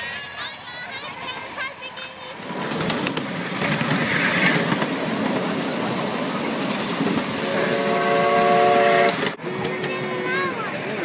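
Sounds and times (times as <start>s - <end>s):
miniature train rumbling: 0.0s - 11.0s
steam train whistle: 7.4s - 9.4s.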